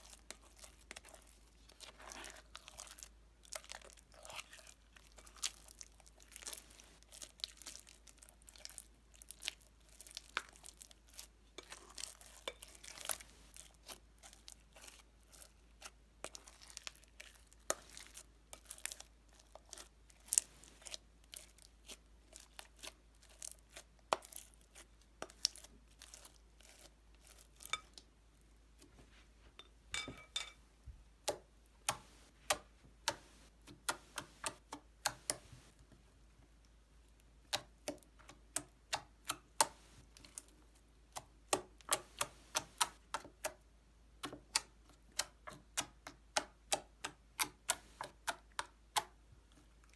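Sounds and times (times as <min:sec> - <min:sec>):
slime with beads crackling: 0:00.0 - 0:28.1.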